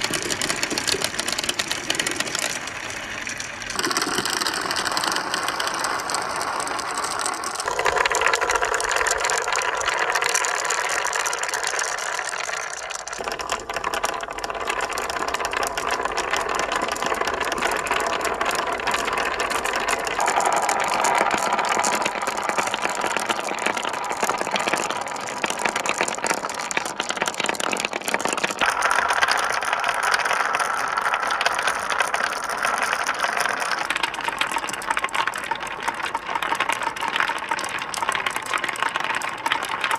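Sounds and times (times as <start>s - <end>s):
marbles rattling along track: 0.0s - 39.9s.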